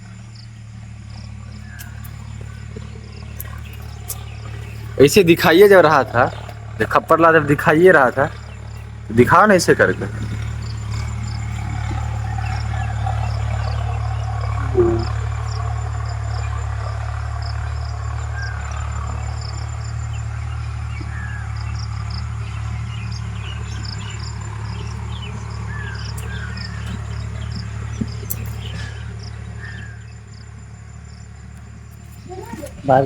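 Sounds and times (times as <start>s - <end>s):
insects chirping in rapid pulses: 0.0s - 33.0s
short rising bird chirps: 10.5s - 16.6s.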